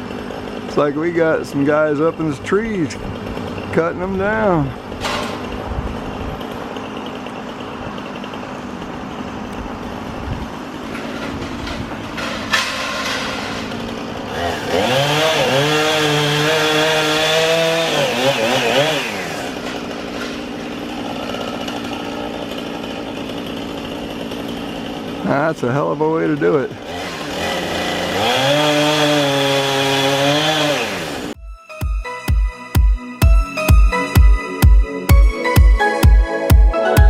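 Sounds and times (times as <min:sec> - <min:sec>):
chainsaw revving: 0:00.0 - 0:31.4
steady engine hum: 0:00.0 - 0:31.4.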